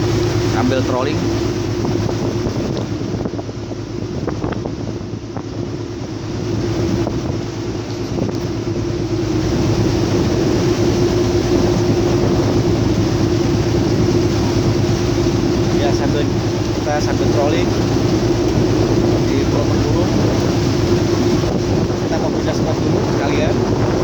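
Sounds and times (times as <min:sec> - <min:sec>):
boat engine running: 0:00.0 - 0:24.0
wind buffeting microphone: 0:00.0 - 0:24.0.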